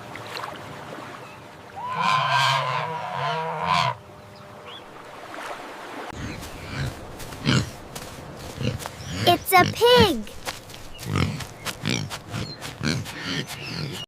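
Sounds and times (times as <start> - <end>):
flamingo honking call: 1.8 - 4.0.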